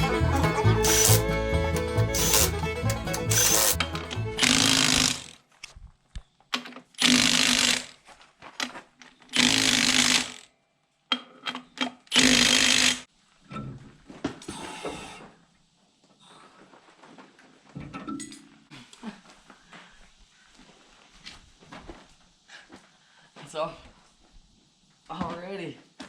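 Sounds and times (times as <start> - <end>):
impact wrench hammering: 0.8 - 5.3, 9.4 - 10.4.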